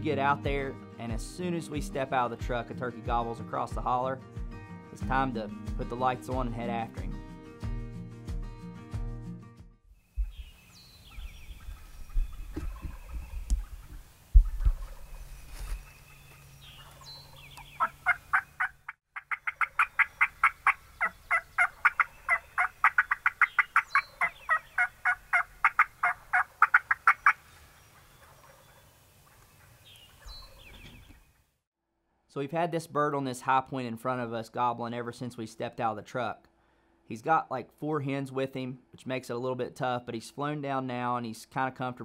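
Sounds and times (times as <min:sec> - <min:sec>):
low thuds and rumble: 0:10.2 - 0:14.9
rapid repeated turkey calls: 0:10.2 - 0:15.7, 0:16.7 - 0:31.2
wild turkeys gobbling: 0:10.2 - 0:31.2.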